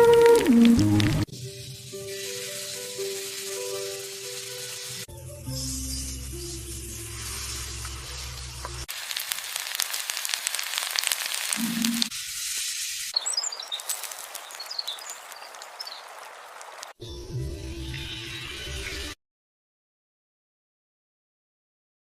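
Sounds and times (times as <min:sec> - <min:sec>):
background music: 0:00.0 - 0:07.0
food sizzling in hot oil: 0:00.0 - 0:17.0.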